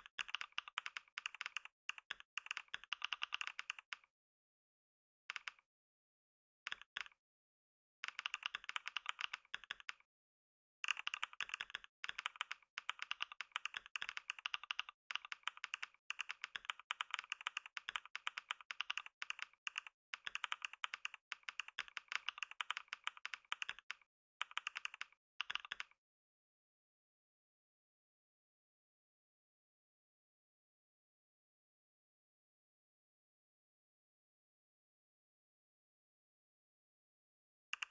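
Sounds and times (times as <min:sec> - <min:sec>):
fast keyboard typing: 0:00.0 - 0:04.1, 0:05.3 - 0:05.6, 0:06.7 - 0:07.2, 0:08.0 - 0:10.0, 0:10.8 - 0:26.0.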